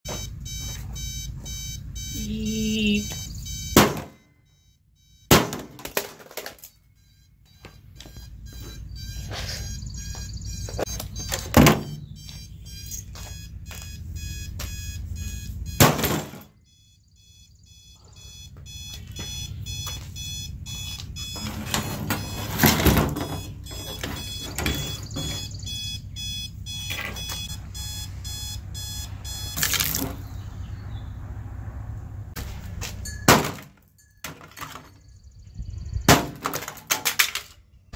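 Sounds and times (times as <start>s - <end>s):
alarm clock ringing: 0.1s - 5.3s, 6.8s - 15.9s, 16.6s - 29.6s.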